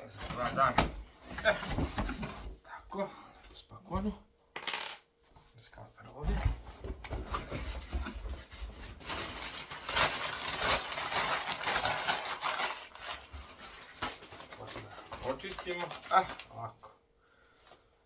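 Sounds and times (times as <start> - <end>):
packaging rustling and tearing: 7.3 - 16.7.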